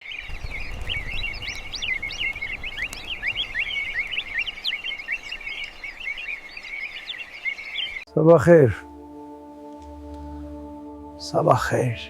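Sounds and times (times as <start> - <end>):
small birds chirping: 0.0 - 8.1.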